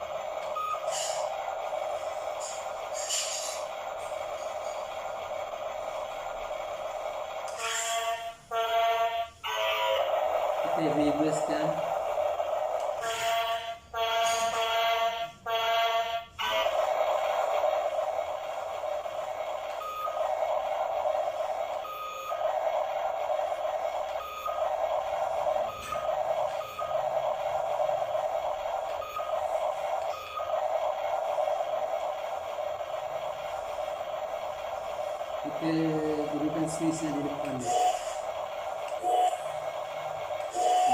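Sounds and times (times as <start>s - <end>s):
toy electronic sound effect noise: 7.4s - 32.1s, 35.1s - 40.9s.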